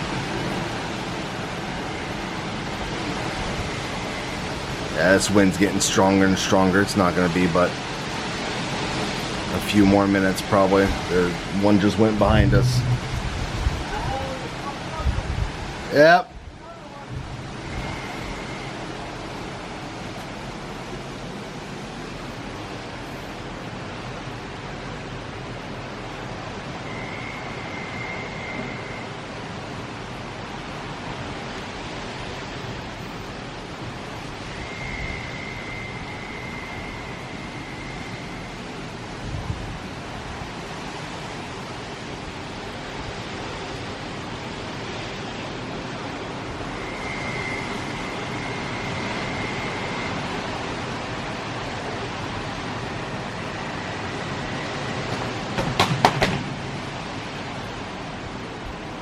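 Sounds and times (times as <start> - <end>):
hurricane wind: 0.0 - 59.0
rain: 0.0 - 59.0
thin high steady tone: 34.4 - 38.9, 46.6 - 50.9.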